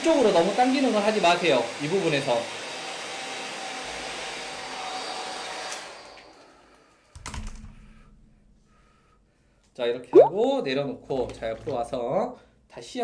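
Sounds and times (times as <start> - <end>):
hair dryer blowing: 0.1 - 6.0.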